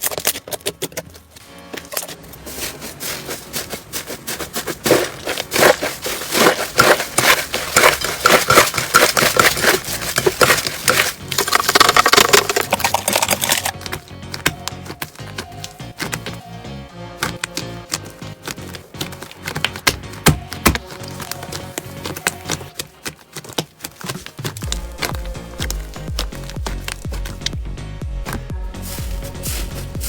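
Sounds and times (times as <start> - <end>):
slime crackling and popping: 4.7 - 16.4, 17.2 - 27.6.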